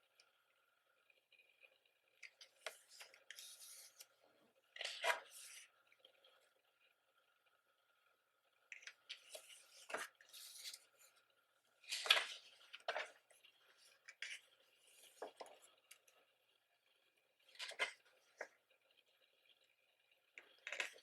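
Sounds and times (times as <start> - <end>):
book pages rustling: 2.2 - 4.2, 4.8 - 5.7, 8.7 - 11.2, 11.8 - 15.7, 17.5 - 18.5.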